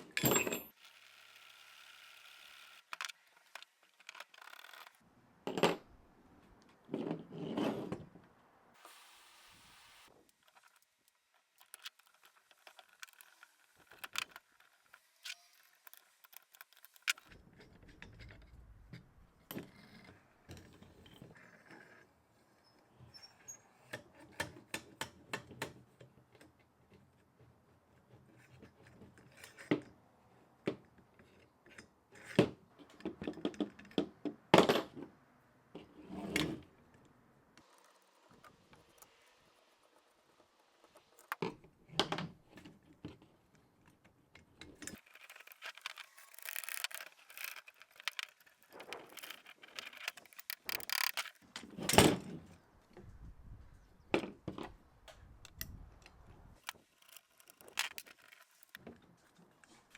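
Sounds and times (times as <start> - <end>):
metallic clicks and knocks of tools: 43.8 - 51.4.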